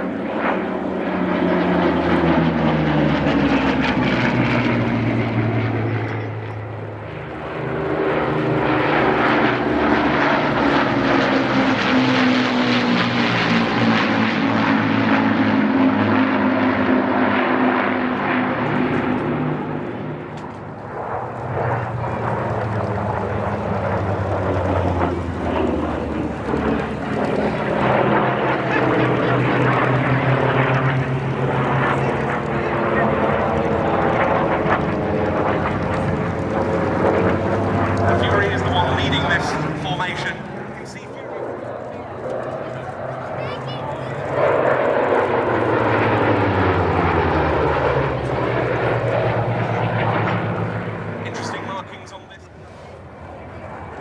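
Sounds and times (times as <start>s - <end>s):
propeller aircraft flying past: 0.0s - 54.0s.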